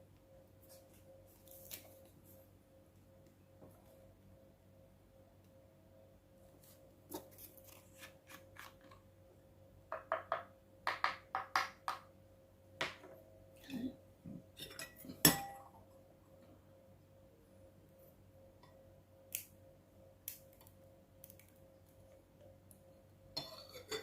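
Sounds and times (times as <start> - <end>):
utensil clinking on bowls: 14.6 - 15.7.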